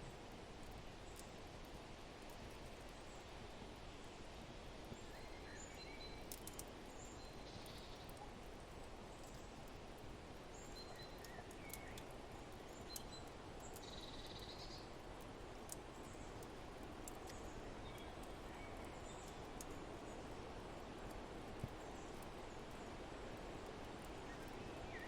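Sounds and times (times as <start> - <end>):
soft wind-like hiss: 0.0 - 25.0
fireplace crackles: 14.8 - 20.4.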